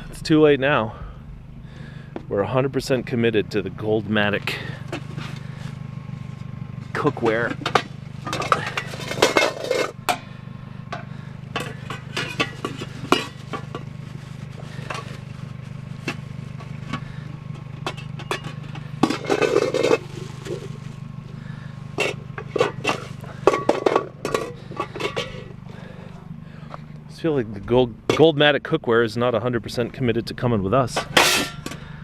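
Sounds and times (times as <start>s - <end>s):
vehicle engine idling: 0.0s - 32.0s
pots and pans clanking: 7.0s - 10.3s, 10.9s - 15.3s, 15.9s - 20.9s, 21.9s - 25.9s, 31.0s - 31.8s.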